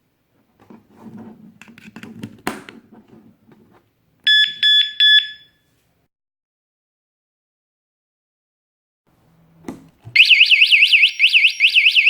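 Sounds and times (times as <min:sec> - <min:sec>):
high-pitched alarm beeps: 0:10.2 - 0:12.0.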